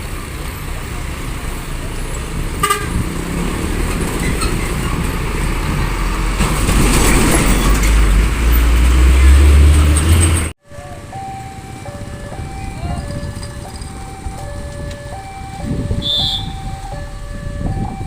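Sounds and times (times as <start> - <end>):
heavy vehicle engine rumbling: 0.0 - 18.0
multi-tone bus horn melody: 2.6 - 3.4, 9.2 - 18.0.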